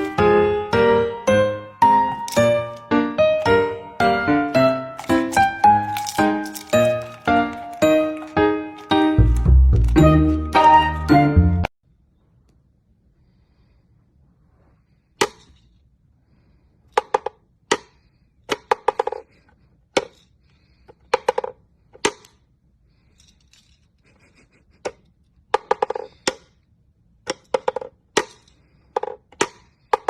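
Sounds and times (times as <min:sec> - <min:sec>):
hard objects knocking and clattering: 0:04.6 - 0:10.7, 0:20.9 - 0:22.3, 0:24.8 - 0:26.6, 0:27.2 - 0:30.0.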